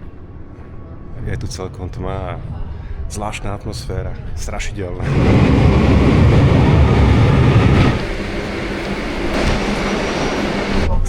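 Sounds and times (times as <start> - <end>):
train running on rails: 5.0 - 11.0.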